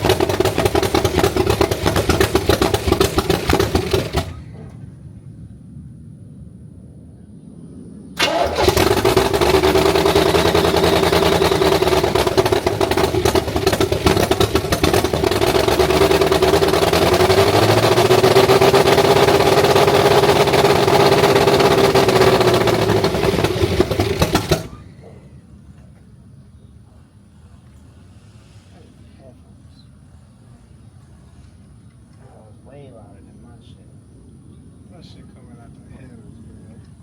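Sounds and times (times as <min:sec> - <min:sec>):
car engine starting and running: 0:00.0 - 0:05.3, 0:08.2 - 0:25.9.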